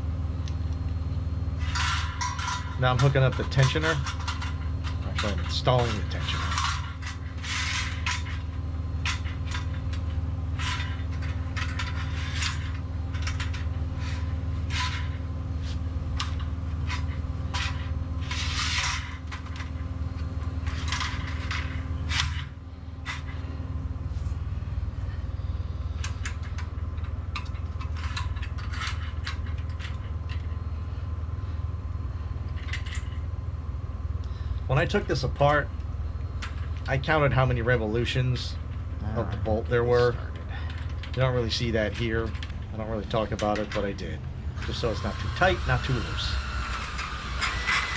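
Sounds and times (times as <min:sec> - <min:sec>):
steady low hum: 0:00.0 - 0:47.9
metal clicks and scrapes: 0:01.6 - 0:15.2.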